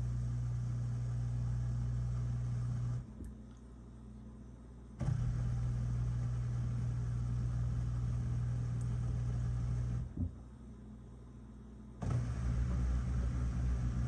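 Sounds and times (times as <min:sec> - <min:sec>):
drain pump humming: 0:05.0 - 0:10.3, 0:12.0 - 0:14.0.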